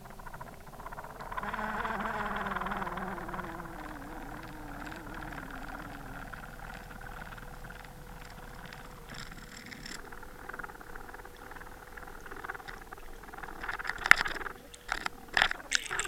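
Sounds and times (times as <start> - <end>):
underwater clicks and crackles: 0.0 - 16.0
underwater hum: 0.0 - 16.0
wavering motor drone: 0.0 - 16.0.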